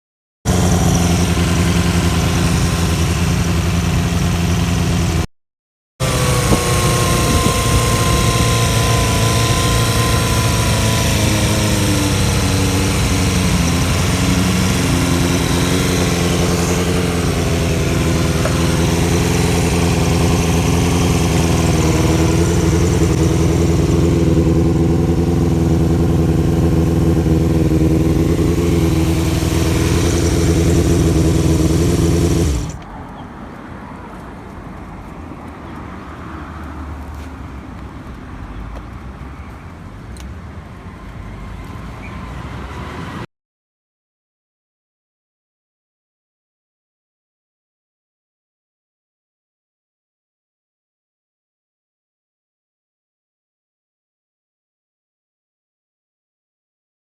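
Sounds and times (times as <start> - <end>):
scooter engine running: 0.5 - 5.3, 6.0 - 33.0.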